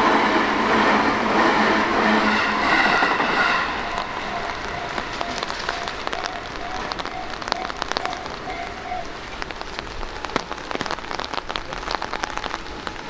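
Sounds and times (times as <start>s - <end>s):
level crossing warning bell: 0.0s - 8.8s
rain falling: 0.0s - 13.0s.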